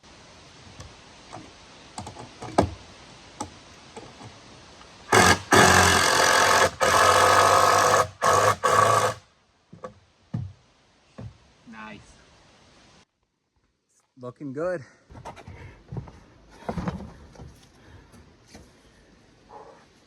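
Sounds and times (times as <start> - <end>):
power drill driving screws: 5.1 - 9.2
wood knocks and taps: 9.7 - 11.4.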